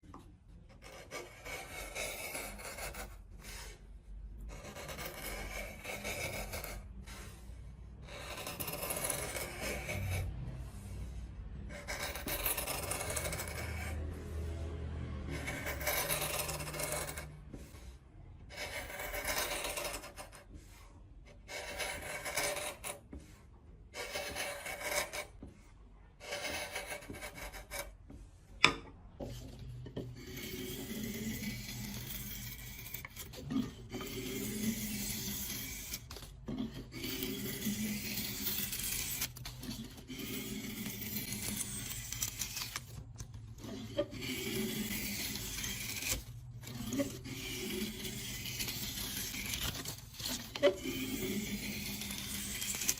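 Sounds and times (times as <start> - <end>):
hand tool scraping wood: 43.5 - 52.9.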